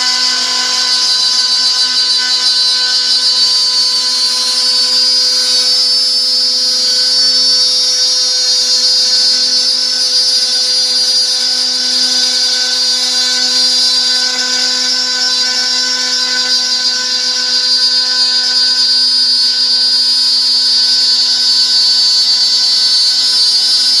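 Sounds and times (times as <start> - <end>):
machine motor whining: 0.0 - 17.5.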